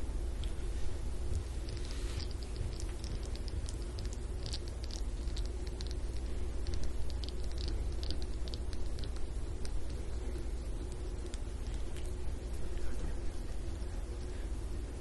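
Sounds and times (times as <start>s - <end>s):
low room hum: 0.0s - 15.0s
massage rubbing on skin: 0.7s - 2.6s.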